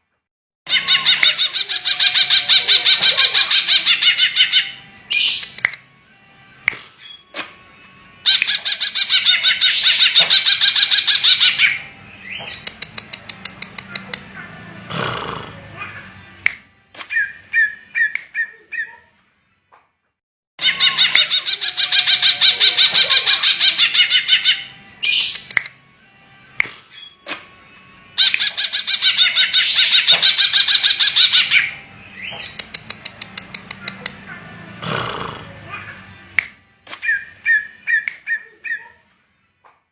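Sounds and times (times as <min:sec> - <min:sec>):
sharp clicks: 0:05.4 - 0:05.8, 0:12.5 - 0:14.3, 0:25.3 - 0:25.8, 0:32.4 - 0:34.2
sharp bird ticks: 0:12.5 - 0:14.2, 0:32.4 - 0:34.2.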